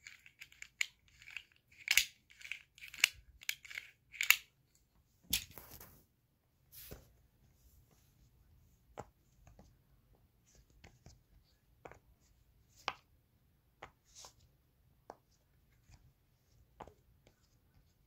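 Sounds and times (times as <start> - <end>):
fidget toys clicking: 0.0 - 4.5.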